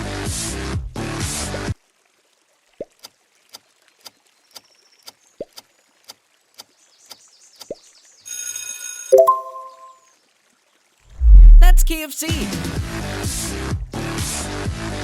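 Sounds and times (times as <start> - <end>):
short rising plops: 11.2 - 12.0.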